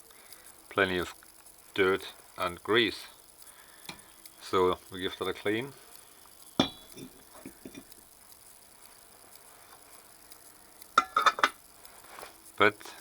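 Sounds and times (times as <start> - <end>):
ringing metal clinks: 6.6 - 7.9
metal parts clacking and knocking: 11.0 - 11.6.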